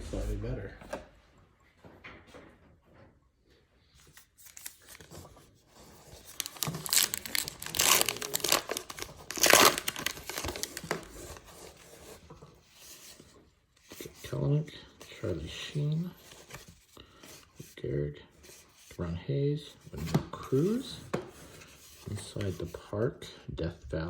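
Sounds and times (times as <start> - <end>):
wrapper crinkling: 5.9 - 11.5.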